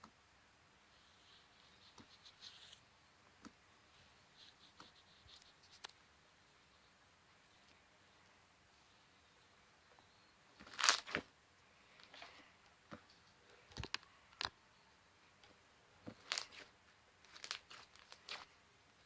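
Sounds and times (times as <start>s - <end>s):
slime crackling and popping: 10.6s - 11.2s, 17.3s - 18.5s.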